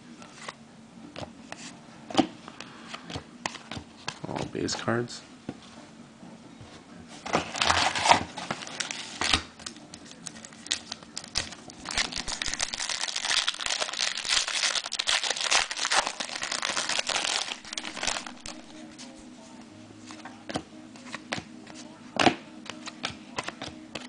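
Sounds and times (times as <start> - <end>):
foil wrapper tearing and crinkling: 10.3 - 18.8.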